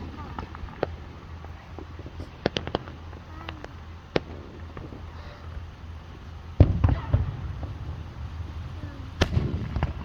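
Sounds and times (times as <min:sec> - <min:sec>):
fireworks popping and cracking: 0:00.0 - 0:10.0
loud deep firework boom: 0:06.6 - 0:10.0.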